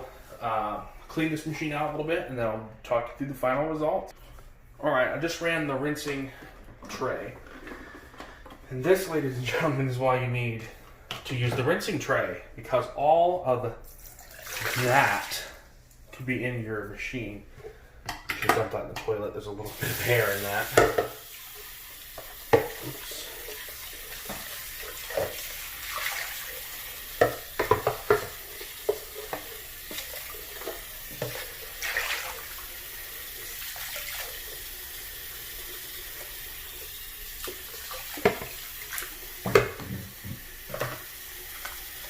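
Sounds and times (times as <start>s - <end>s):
water running from a tap: 14.0s - 15.6s, 19.7s - 42.0s.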